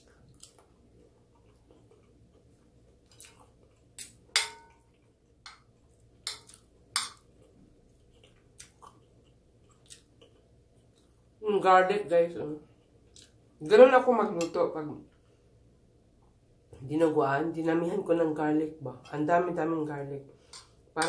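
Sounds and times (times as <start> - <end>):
chewing: 0.0 - 11.3, 12.7 - 13.4
spoon scraping and clinking dish: 4.3 - 4.8.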